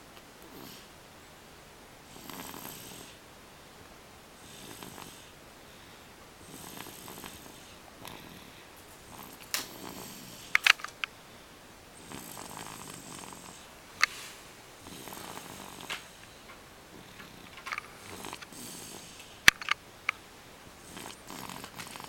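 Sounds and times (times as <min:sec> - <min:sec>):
baby snoring: 0:00.5 - 0:00.9, 0:02.1 - 0:03.2, 0:04.4 - 0:05.4, 0:06.4 - 0:10.7, 0:12.0 - 0:19.4, 0:20.8 - 0:22.0
sharp clicks: 0:10.4 - 0:11.2, 0:17.2 - 0:18.5, 0:19.2 - 0:20.2.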